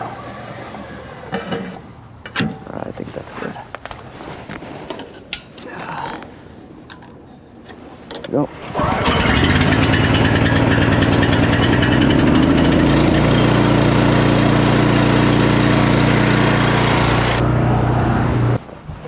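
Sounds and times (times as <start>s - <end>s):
pressure washer engine running: 8.7s - 17.4s.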